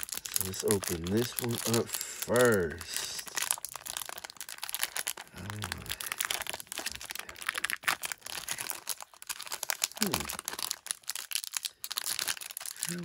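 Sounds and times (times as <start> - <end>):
foil pack crinkling: 0.0 - 13.0
low voiced grunt: 5.4 - 5.9, 10.0 - 10.3.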